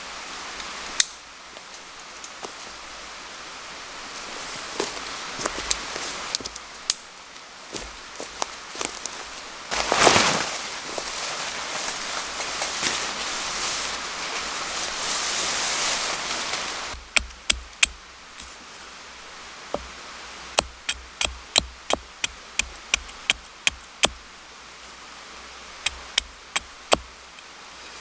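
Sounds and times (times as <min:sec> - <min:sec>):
steady hiss: 0:00.0 - 0:28.0
knife chopping on cutting board: 0:20.6 - 0:24.2, 0:25.9 - 0:27.1.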